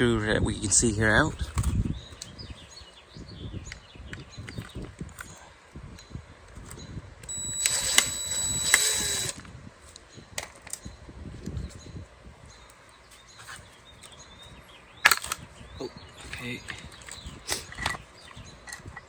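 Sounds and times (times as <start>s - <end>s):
power driver whining: 7.2s - 9.5s.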